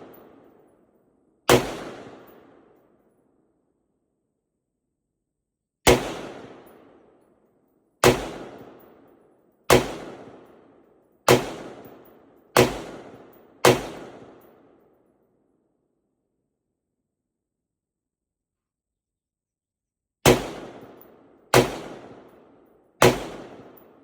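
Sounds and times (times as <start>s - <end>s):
rifle gunshots: 1.5s - 2.6s, 5.9s - 6.9s, 8.0s - 8.8s, 9.7s - 10.5s, 11.3s - 12.0s, 12.6s - 14.4s, 20.3s - 22.3s, 23.0s - 23.9s.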